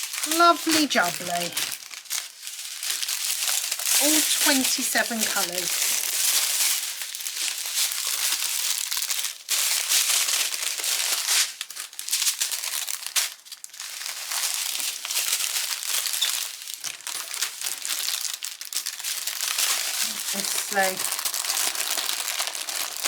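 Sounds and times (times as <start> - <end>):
plastic bags crinkling: 0.0 - 23.0.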